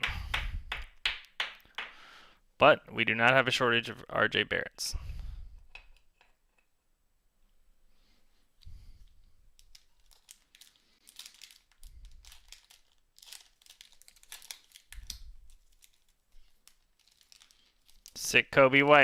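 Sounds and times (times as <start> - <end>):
card packs crinkling and rustling: 9.6 - 19.0.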